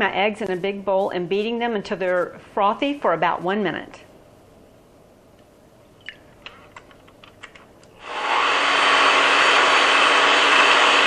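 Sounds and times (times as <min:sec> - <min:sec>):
electric mixer whirring: 0:08.0 - 0:11.0.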